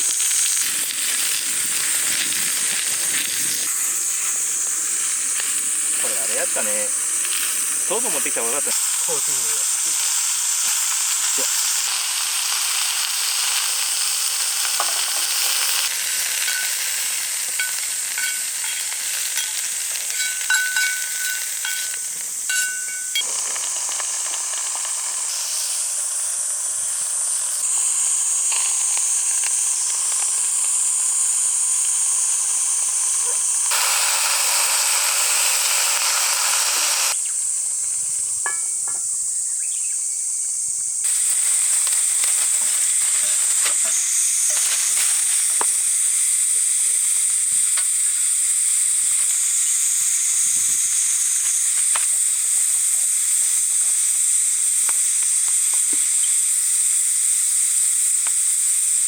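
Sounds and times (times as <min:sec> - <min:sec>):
vegetables sizzling in a pan: 0:00.0 - 0:59.0
utensil tapping a pan: 0:17.6 - 0:23.3, 0:38.4 - 0:39.0.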